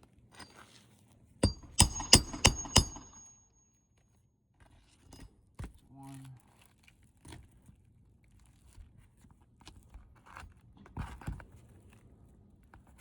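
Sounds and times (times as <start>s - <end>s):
loud knocks: 1.4s - 3.3s.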